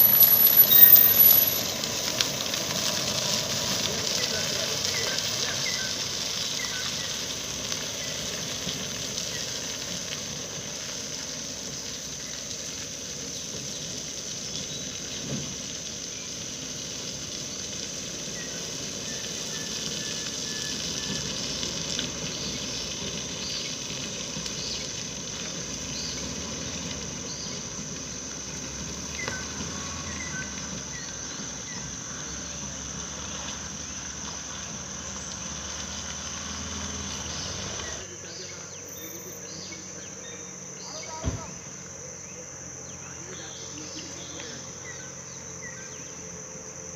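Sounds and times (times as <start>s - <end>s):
short bird chirps: 0.0s - 1.8s
insects droning: 0.0s - 46.9s.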